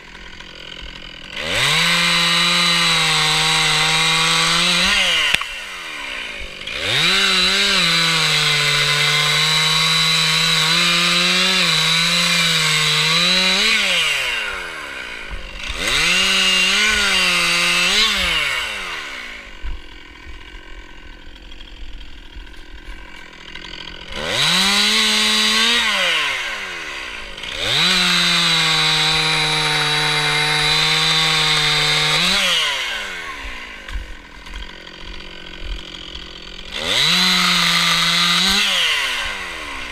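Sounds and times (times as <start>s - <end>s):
chainsaw idling: 0.0s - 39.9s
chainsaw revving cutting wood: 0.0s - 39.9s.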